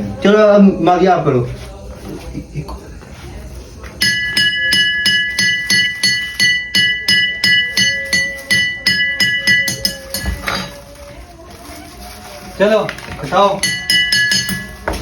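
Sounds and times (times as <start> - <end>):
glass being tapped: 4.0 - 10.7, 13.6 - 15.0.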